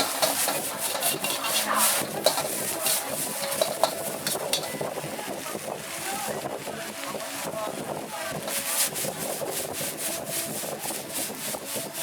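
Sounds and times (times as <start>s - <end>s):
metal knocking on metal: 0.0s - 4.7s
metal spatula scraping a wok: 0.0s - 4.9s, 8.4s - 11.3s
frying sizzle: 0.0s - 12.0s.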